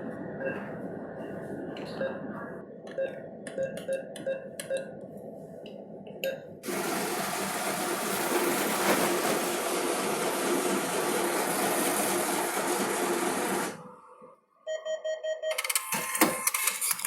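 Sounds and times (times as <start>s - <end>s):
cash dispenser whirring: 6.6s - 13.8s.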